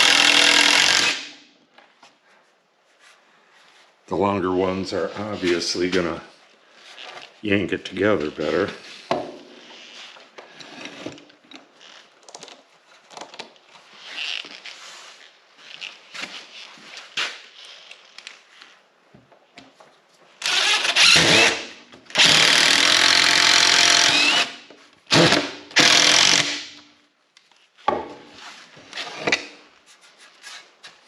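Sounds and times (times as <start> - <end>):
power driver driving screws: 0.0 - 1.4, 20.4 - 26.8
knocks of handling wood and tools: 8.2 - 9.6, 27.4 - 31.0.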